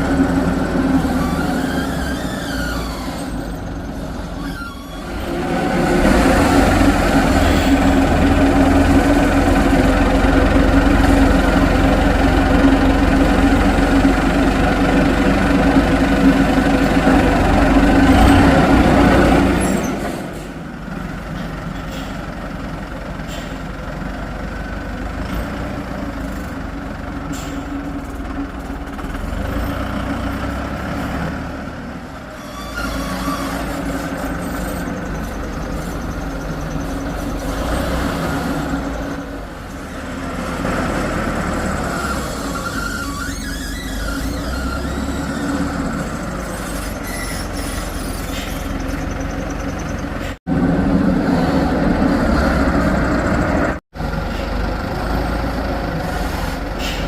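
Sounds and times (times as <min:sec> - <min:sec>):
heavy diesel engine running: 0:00.0 - 0:57.0.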